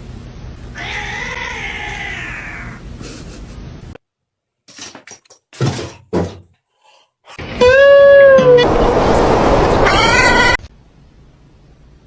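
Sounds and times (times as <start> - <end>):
cat meowing: 0.8 - 2.8, 9.8 - 10.6
knocks and rustles: 4.7 - 6.6.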